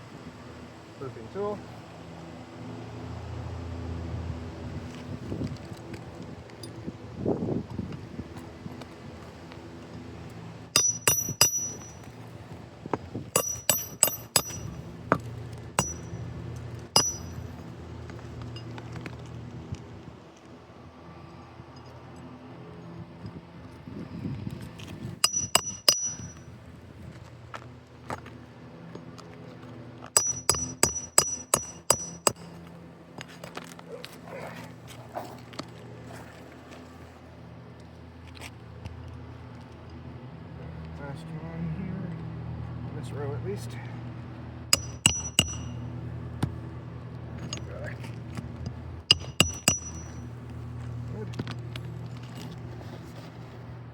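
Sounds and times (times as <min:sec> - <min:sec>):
steady low hum: 0:10.7 - 0:18.0
hammer striking metal: 0:10.8 - 0:12.1, 0:13.4 - 0:15.2, 0:15.8 - 0:16.2, 0:17.0 - 0:17.6, 0:25.2 - 0:26.4, 0:30.2 - 0:32.5, 0:44.8 - 0:45.8, 0:49.1 - 0:50.2.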